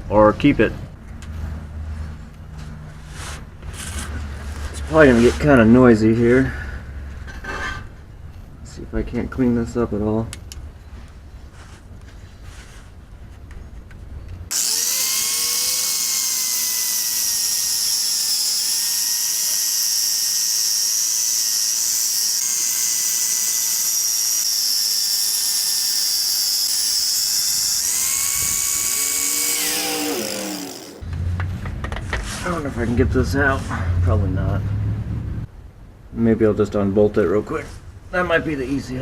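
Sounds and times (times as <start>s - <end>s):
metal being abraded: 14.5s - 31.0s
power tool motor whine: 14.5s - 31.0s.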